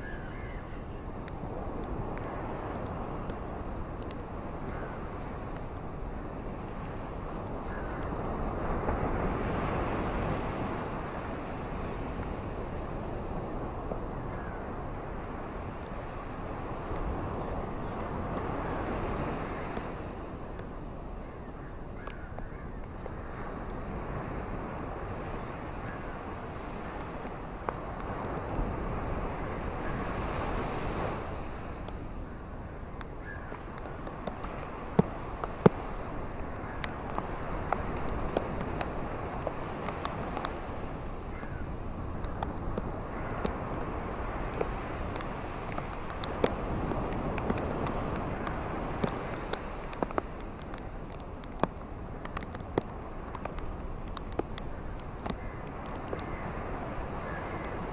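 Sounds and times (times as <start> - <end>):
rain and wind rushing: 1.1 - 21.2, 22.0 - 57.9
steady rain: 42.1 - 57.9.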